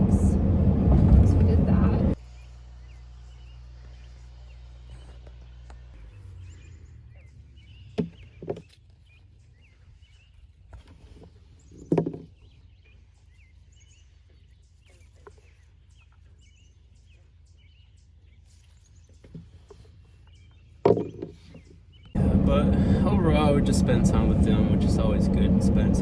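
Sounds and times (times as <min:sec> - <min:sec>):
steady low rumble: 0:00.0 - 0:08.4, 0:22.1 - 0:26.0
birds chirping: 0:01.4 - 0:26.0.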